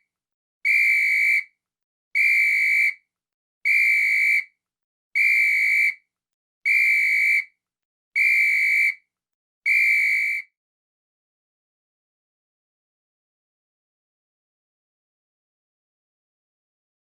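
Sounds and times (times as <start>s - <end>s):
shrill whistle blasts: 0.6s - 1.5s, 2.2s - 3.0s, 3.7s - 4.5s, 5.2s - 6.0s, 6.7s - 7.5s, 8.2s - 9.0s, 9.7s - 10.5s.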